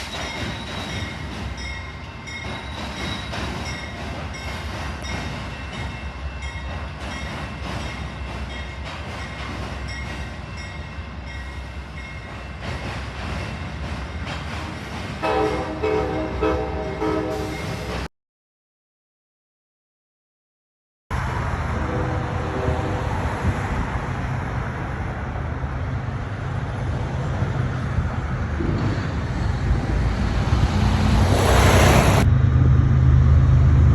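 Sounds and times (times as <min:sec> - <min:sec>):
train rumbling on rails: 0:00.0 - 0:18.1, 0:21.1 - 0:33.9
train horn: 0:15.2 - 0:17.9, 0:21.7 - 0:23.2.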